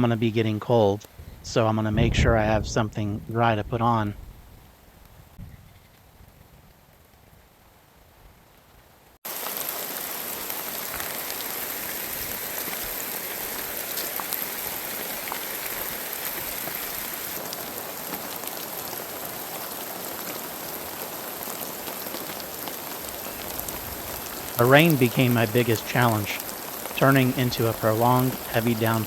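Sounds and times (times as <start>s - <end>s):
heavy rain: 9.2s - 29.0s.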